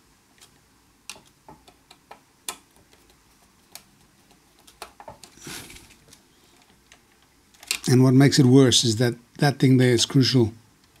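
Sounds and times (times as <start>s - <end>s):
small clicks and taps of parts: 0.4s - 5.4s, 6.1s - 8.6s.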